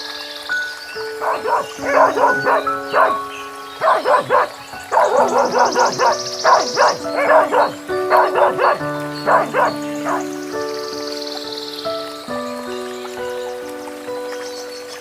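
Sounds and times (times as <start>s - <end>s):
background music with held notes: 0.0s - 15.0s.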